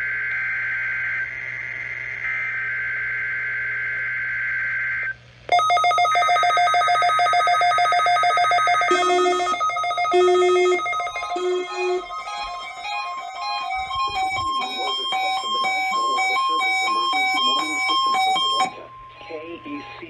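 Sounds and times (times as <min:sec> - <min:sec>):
pulsing electronic alert tone: 0:05.6 - 0:20.0
raspy two-tone digital chirping: 0:05.8 - 0:20.0.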